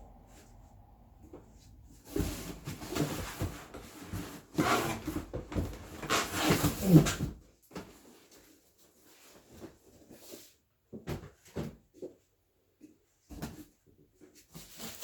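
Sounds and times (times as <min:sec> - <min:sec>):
cardboard boxes scraping and rustling: 0:02.0 - 0:10.6.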